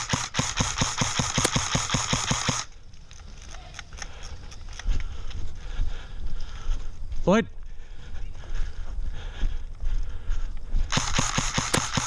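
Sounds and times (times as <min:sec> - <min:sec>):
airsoft rifle rapid shots: 0:00.0 - 0:02.7, 0:10.9 - 0:12.0.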